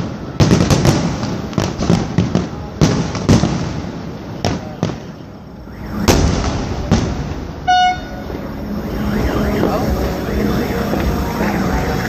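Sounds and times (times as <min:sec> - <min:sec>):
fireworks exploding: 0:00.0 - 0:12.0
short horn toot: 0:07.6 - 0:08.3.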